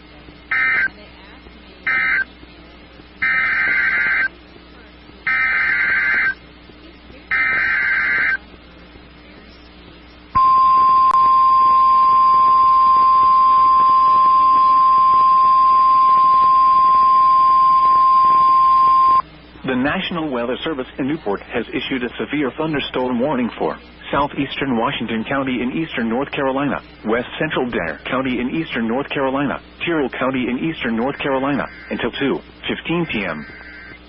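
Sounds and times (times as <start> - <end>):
steady warning alarm tone: 0.5 - 1.0, 1.8 - 2.3, 3.2 - 4.3, 5.2 - 6.4, 7.3 - 8.4, 10.4 - 19.2, 31.0 - 32.2, 32.9 - 34.0
warbling digital data bursts: 5.2 - 6.4, 31.0 - 32.3, 32.9 - 34.0.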